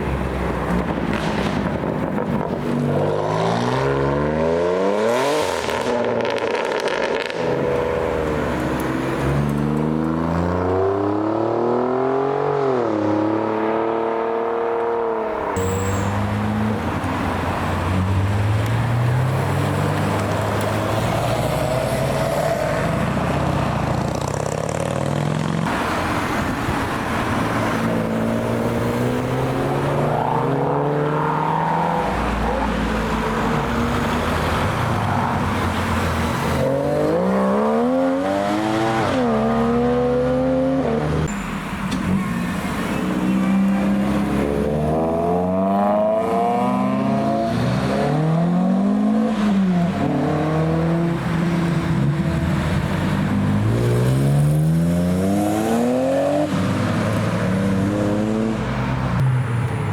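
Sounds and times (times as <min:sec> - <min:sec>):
cars accelerating through gears: 0:24.5 - 0:41.3, 0:41.9 - 0:59.9.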